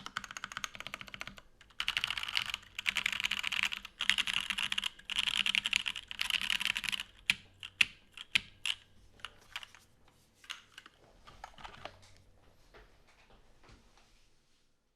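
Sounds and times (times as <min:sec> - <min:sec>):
mechanical keyboard typing: 0:00.0 - 0:09.8, 0:10.5 - 0:12.0.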